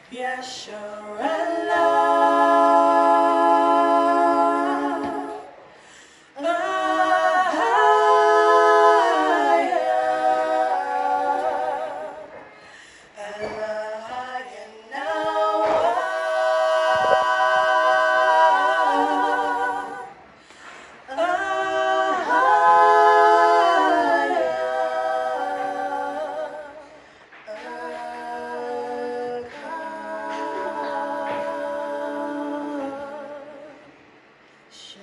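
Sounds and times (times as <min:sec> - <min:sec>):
a cappella voices singing chords: 0:00.0 - 0:35.0.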